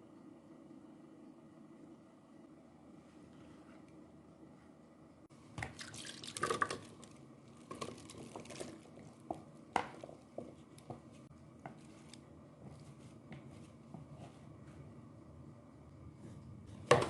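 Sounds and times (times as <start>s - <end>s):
liquid dripping and splashing: 5.6s - 7.2s.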